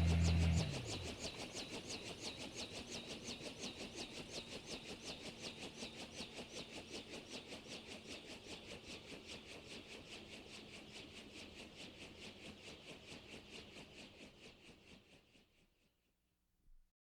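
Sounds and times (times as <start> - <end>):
rotor blades swishing: 0.0 - 1.2
helicopter engine hum: 0.0 - 1.8.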